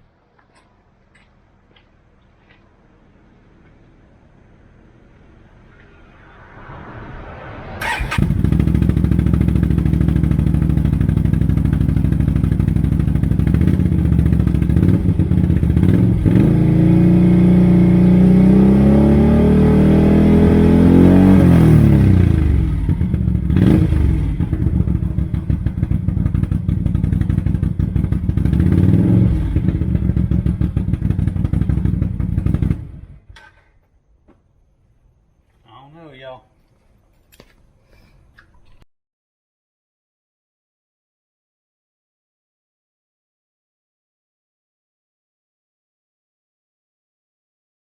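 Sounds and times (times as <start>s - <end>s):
engine idling and revving: 5.7s - 33.3s
engine starting: 7.8s - 8.5s.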